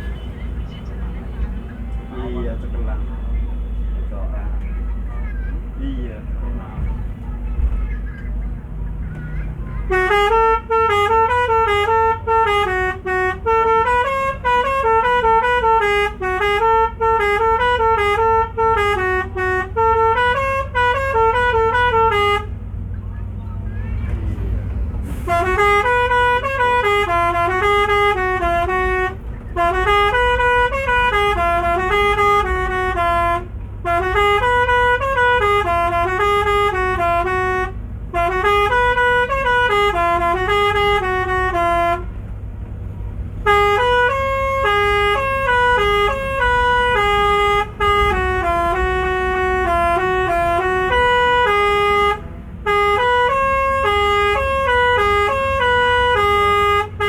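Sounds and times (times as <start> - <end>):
multi-tone musical air horn: 9.9 - 22.5, 25.2 - 42.1, 43.4 - 57.0.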